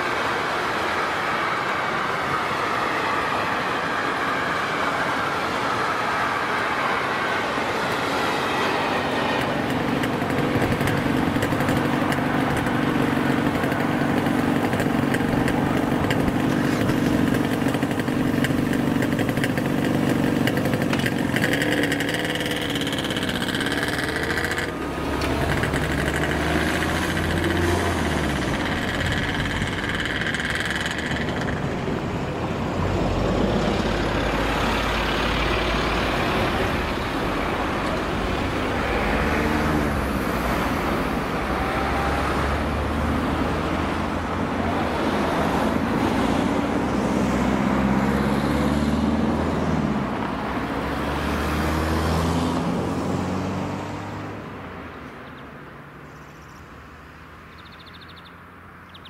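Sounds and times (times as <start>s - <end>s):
heavy diesel engine running: 0.0s - 42.4s.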